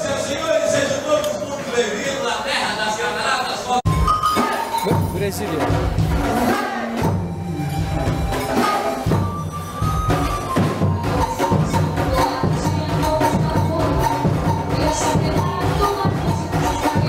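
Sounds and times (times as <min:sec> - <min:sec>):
rhythmic percussion beat: 0:03.8 - 0:17.0
held melody line: 0:07.0 - 0:17.0.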